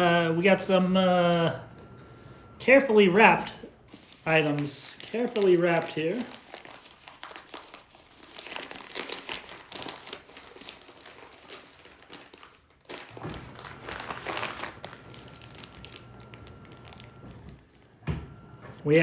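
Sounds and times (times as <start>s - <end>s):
low steady hum: 0.0s - 5.4s, 13.0s - 19.0s
wrapping crinkling and rustling: 3.4s - 17.7s.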